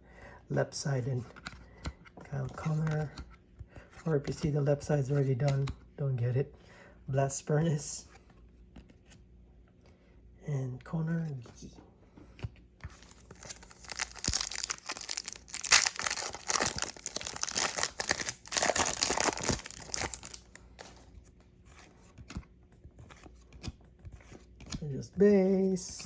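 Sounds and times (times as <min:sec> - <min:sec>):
wrapper tearing and crinkling: 0:13.3 - 0:20.6.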